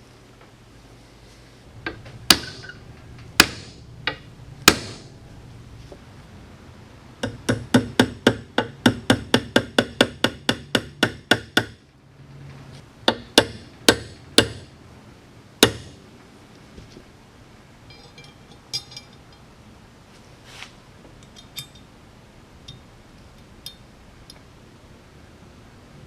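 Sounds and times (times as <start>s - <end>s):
hammer tapping: 1.8s - 2.8s, 7.2s - 11.8s, 13.0s - 14.7s.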